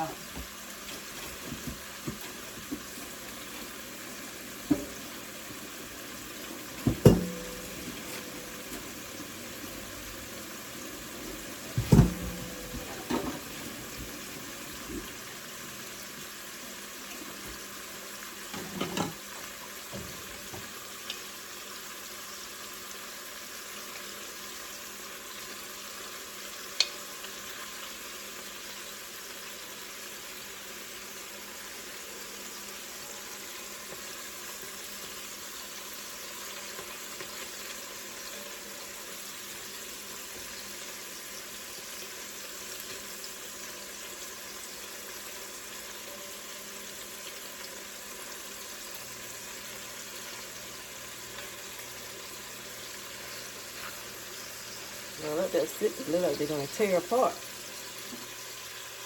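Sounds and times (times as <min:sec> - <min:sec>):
meatballs sizzling in a pan: 0:00.0 - 0:59.0
cookware clanking: 0:06.8 - 0:09.0, 0:11.7 - 0:13.8, 0:18.5 - 0:19.2.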